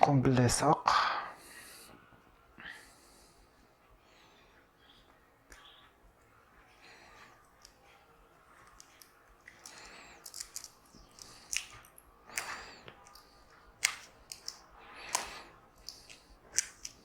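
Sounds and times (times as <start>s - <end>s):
adhesive tape tearing off roll: 13.8s - 17.0s.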